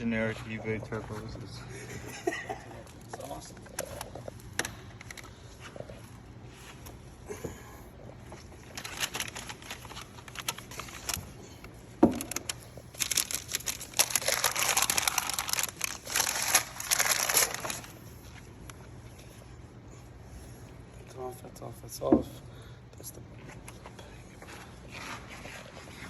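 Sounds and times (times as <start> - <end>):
packaging crinkling and rustling: 8.2 - 18.5.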